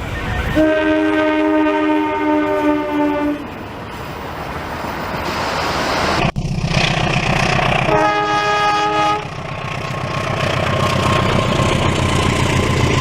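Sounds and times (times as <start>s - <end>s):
train running rush: 0.0s - 13.0s
diesel locomotive horn blast: 0.3s - 3.6s, 7.8s - 9.5s.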